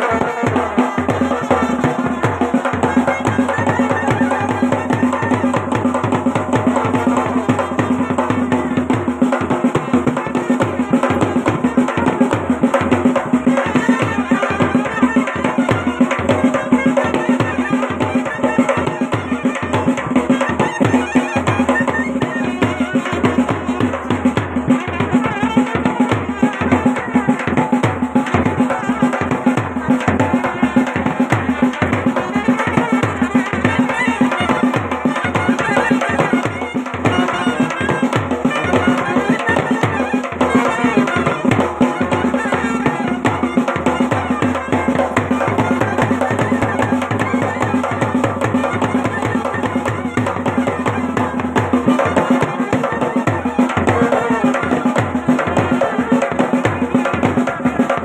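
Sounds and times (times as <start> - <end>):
drums beating fast rhythm: 0.0 - 58.0
wind instrument melody: 0.0 - 58.0.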